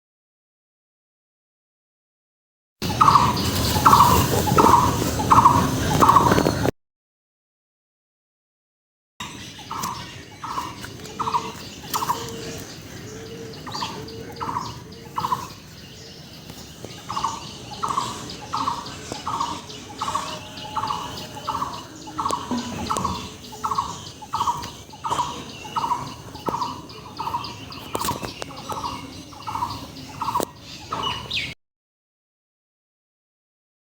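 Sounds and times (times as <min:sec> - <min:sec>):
lower bird calls: 0:02.8 - 0:06.7, 0:09.2 - 0:31.6.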